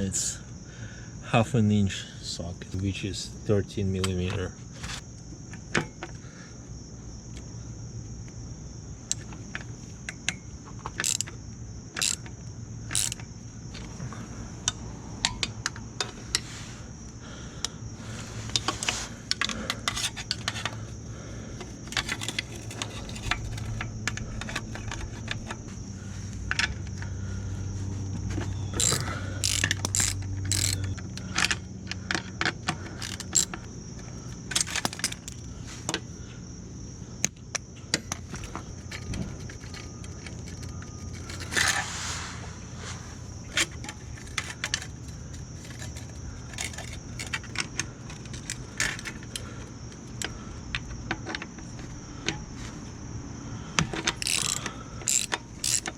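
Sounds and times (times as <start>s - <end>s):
socket ratchet clicking: 10.2s - 11.4s, 12.0s - 13.3s, 28.7s - 31.6s, 33.0s - 33.6s, 54.0s - 55.9s
metal tools clinking: 21.9s - 25.6s, 28.7s - 31.5s, 33.0s - 33.6s, 38.1s - 42.0s, 43.5s - 49.4s, 54.0s - 55.9s.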